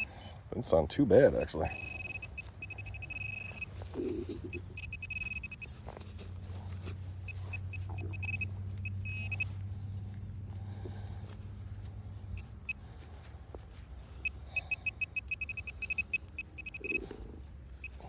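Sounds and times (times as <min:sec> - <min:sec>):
metal detector high-pitched tone: 0:00.0 - 0:00.3, 0:01.3 - 0:05.7, 0:07.3 - 0:09.5, 0:14.2 - 0:17.1
low steady hum: 0:00.0 - 0:18.0.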